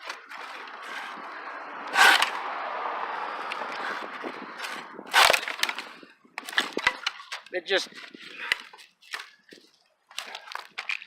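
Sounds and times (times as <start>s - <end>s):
pruning saw rasping through branch: 0.0s - 1.2s, 1.9s - 2.4s, 3.8s - 6.0s.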